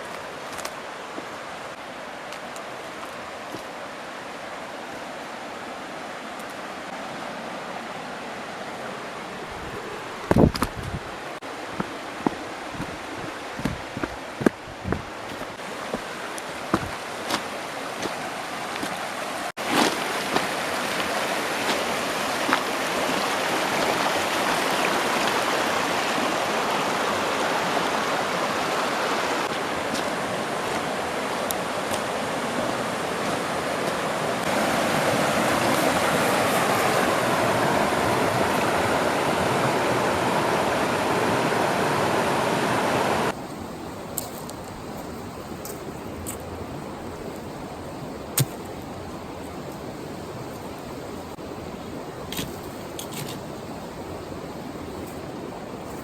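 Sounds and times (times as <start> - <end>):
rushing flowing water: 0.0 - 56.0.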